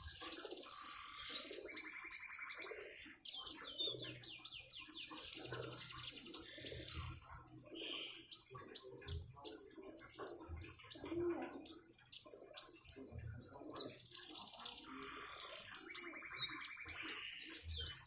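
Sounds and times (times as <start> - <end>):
songbird chirping and trilling: 0.0 - 18.0.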